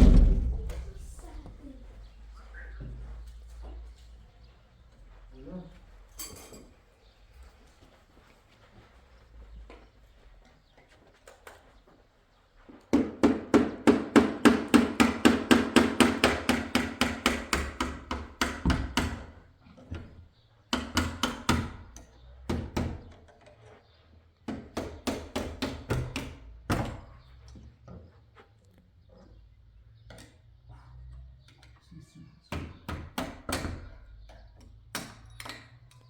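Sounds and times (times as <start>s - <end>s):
hammer blows on wooden door: 0.0s - 0.8s, 12.9s - 19.4s.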